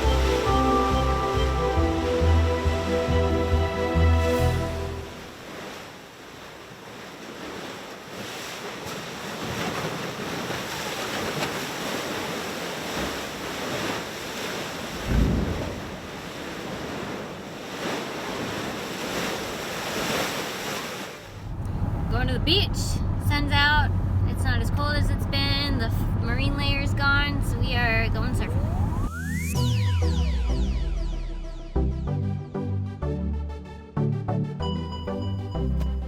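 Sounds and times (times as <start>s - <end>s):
ocean surf washing in: 0.0s - 24.6s.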